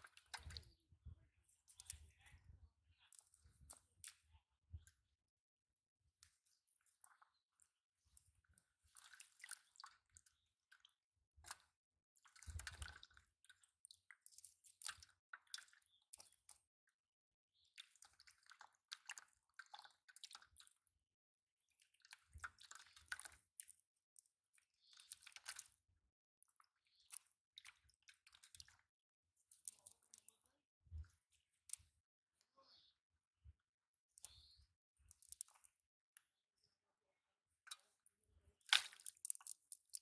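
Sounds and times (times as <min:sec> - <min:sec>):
wet splashes and squelches: 0:08.9 - 0:10.9, 0:22.0 - 0:23.7, 0:24.8 - 0:25.8, 0:27.0 - 0:28.8, 0:38.6 - 0:40.0.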